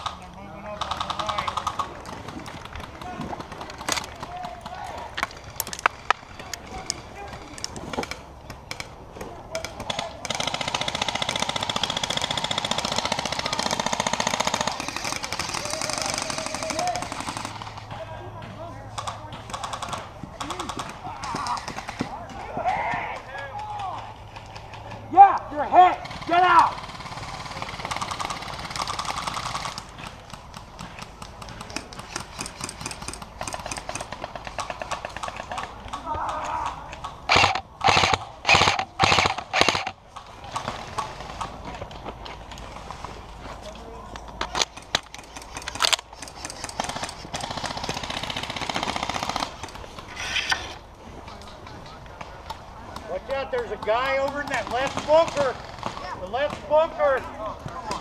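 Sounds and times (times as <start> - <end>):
airsoft guns firing: 0.0 - 6.3, 9.5 - 18.0, 25.8 - 36.4, 37.2 - 41.6, 44.4 - 49.8, 54.0 - 57.0
airsoft gun automatic fire: 37.3 - 40.0, 44.8 - 49.8.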